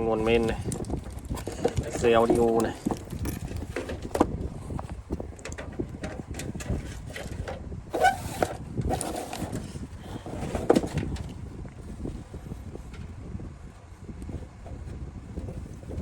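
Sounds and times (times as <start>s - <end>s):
clicks and knocks of handled parts: 0.4s - 7.6s.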